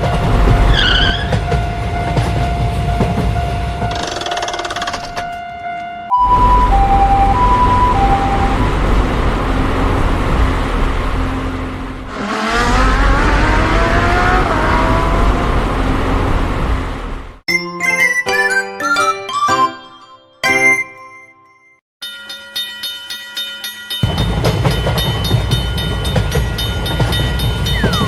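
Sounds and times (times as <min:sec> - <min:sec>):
two-tone ambulance siren: 0:00.0 - 0:03.9, 0:04.9 - 0:09.1
loud engine rumble: 0:06.3 - 0:17.4
engine revving whine: 0:07.6 - 0:17.4.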